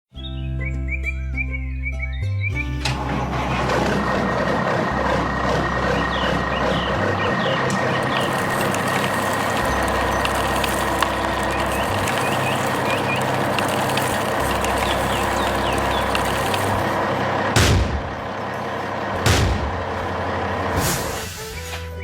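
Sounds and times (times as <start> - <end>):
heavy vehicle engine hum: 2.8 - 21.9
low rumble: 3.3 - 20.8.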